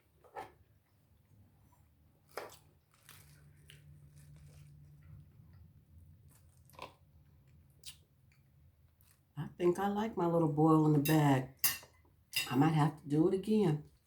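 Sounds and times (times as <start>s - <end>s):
chewing with crunches: 1.2s - 9.3s.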